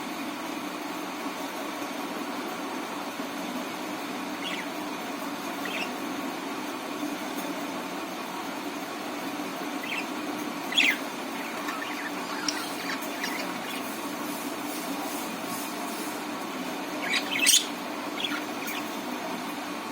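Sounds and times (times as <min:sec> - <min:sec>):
steady low hum: 0:02.4 - 0:19.9
budgerigars chirping: 0:04.3 - 0:06.2, 0:09.6 - 0:14.2, 0:16.8 - 0:19.1.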